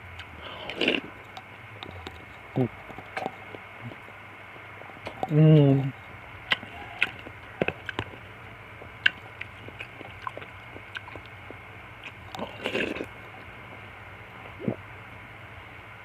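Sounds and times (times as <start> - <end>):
chewing and slurping: 0.4 - 4.1, 5.9 - 13.8.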